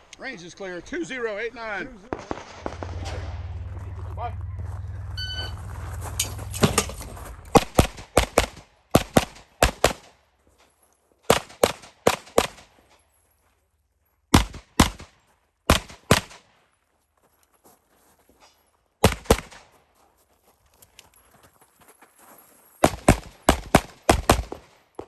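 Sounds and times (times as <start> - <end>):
pistol shots: 6.2 - 10.1, 11.3 - 12.7, 14.3 - 15.1, 15.7 - 16.4, 19.0 - 19.6, 22.8 - 24.8.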